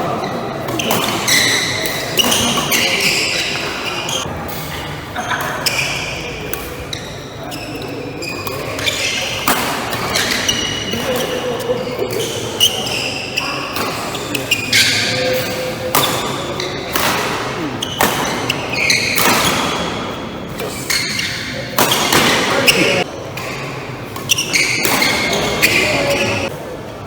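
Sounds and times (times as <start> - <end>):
shoes squeaking on court floor: 0.0 - 26.5
rackets hitting shuttlecock: 7.8 - 11.4, 13.7 - 23.6.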